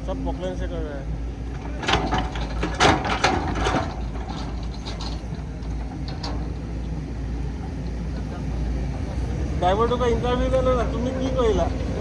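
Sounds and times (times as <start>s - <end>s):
engine rumble: 0.0s - 12.0s
metallic clanks and rattles: 1.5s - 7.0s.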